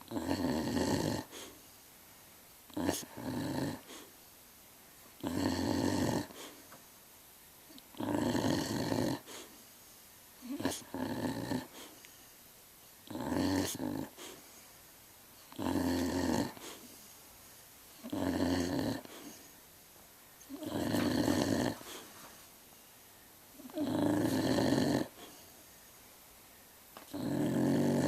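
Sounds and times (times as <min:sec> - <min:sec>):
pet snoring: 0:00.0 - 0:01.6, 0:02.7 - 0:04.1, 0:05.2 - 0:06.6, 0:07.8 - 0:09.6, 0:10.4 - 0:12.1, 0:13.0 - 0:14.5, 0:15.5 - 0:17.0, 0:18.0 - 0:19.5, 0:20.4 - 0:22.1, 0:23.6 - 0:25.5, 0:27.1 - 0:28.0.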